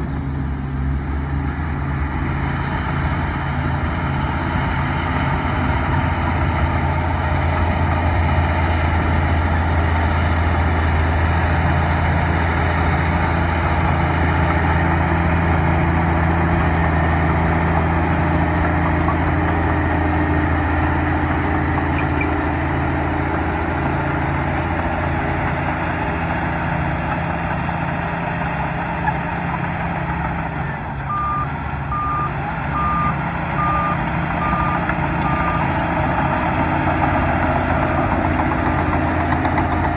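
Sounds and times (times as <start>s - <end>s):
bulldozer diesel engine running: 0.0s - 39.9s
backup alarm beeping: 31.1s - 35.7s.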